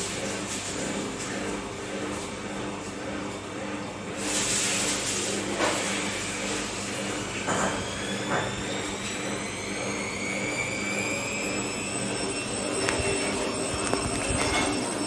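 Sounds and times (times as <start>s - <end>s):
washing machine motor whining: 0.0s - 15.0s
steady hum: 11.6s - 15.0s.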